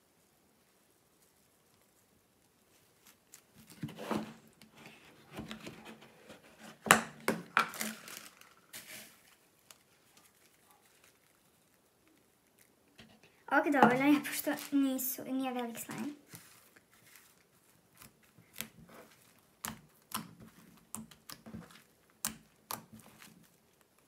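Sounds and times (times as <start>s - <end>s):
plastic packaging crinkling: 7.2s - 13.0s, 13.6s - 24.0s.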